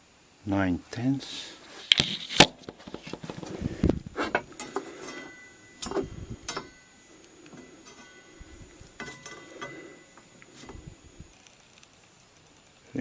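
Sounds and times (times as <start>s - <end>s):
tools knocking and clicking: 4.3s - 6.8s, 8.9s - 10.8s.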